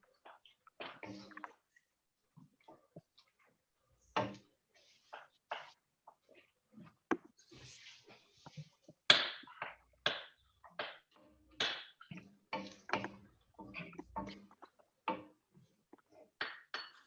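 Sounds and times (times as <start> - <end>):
utensils knocking on pots: 16.4 - 17.0.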